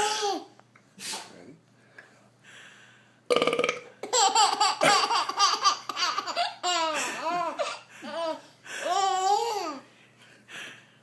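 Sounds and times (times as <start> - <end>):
baby laughing: 4.0 - 9.8.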